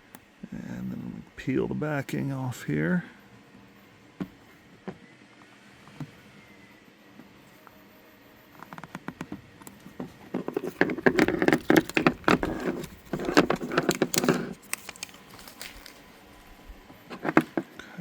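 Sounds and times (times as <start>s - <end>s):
tape liner peeling crackle: 10.4s - 16.5s.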